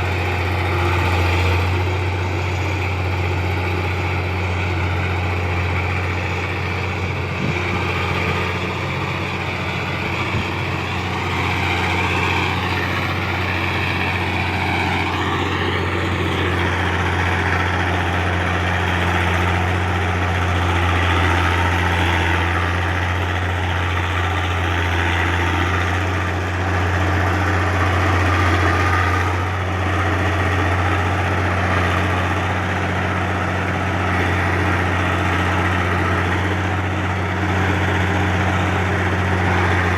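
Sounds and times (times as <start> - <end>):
bulldozer diesel engine droning: 0.0 - 39.9.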